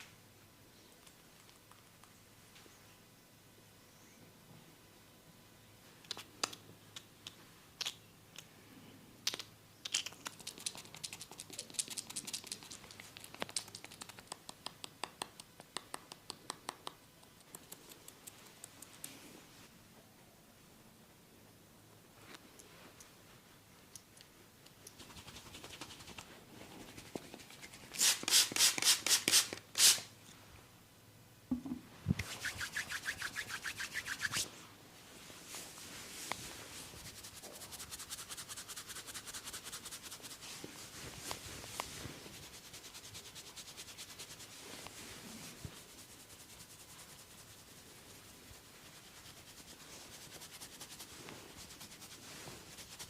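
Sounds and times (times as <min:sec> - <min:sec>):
rubbing and scratching on head: 0:10.1 - 0:19.7, 0:24.9 - 0:30.0, 0:32.2 - 0:34.6, 0:35.2 - 0:53.0.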